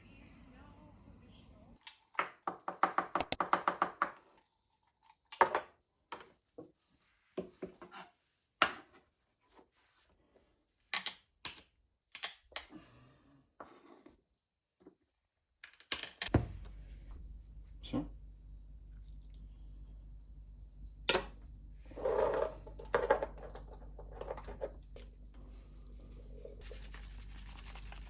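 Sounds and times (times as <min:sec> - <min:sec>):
hard objects knocking and clinking: 0:19.0 - 0:19.5, 0:22.0 - 0:28.0.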